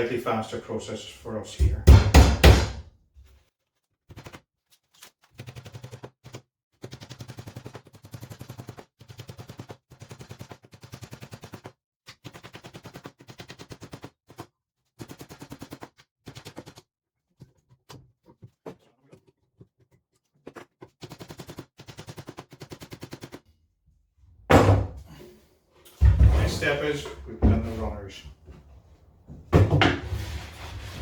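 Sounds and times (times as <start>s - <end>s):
hammering nails into wood: 1.7s - 2.8s, 24.5s - 25.1s.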